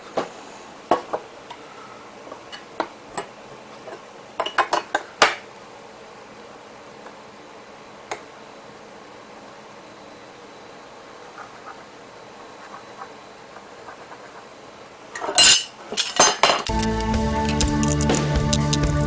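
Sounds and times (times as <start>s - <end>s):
metal parts clinking on a workbench: 15.2s - 16.8s.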